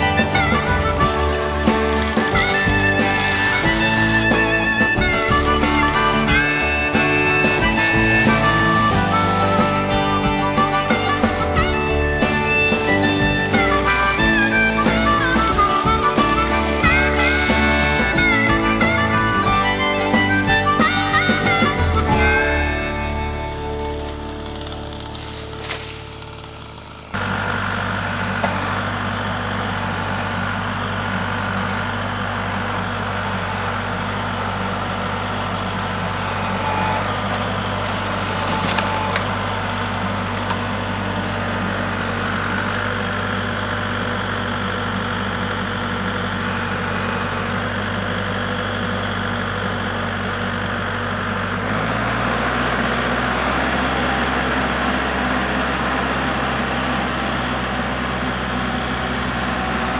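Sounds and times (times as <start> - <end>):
wood snapping: 0.0 - 27.2, 34.8 - 43.2
tractor diesel engine running: 0.0 - 59.9.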